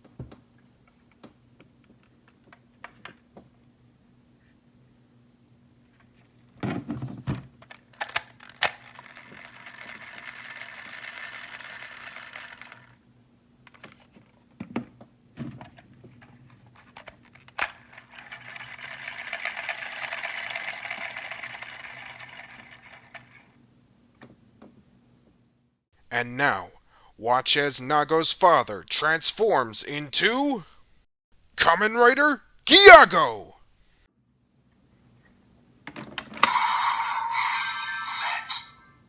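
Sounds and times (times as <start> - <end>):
rapid fine clicking of toys: 7.7 - 12.9, 17.0 - 23.4.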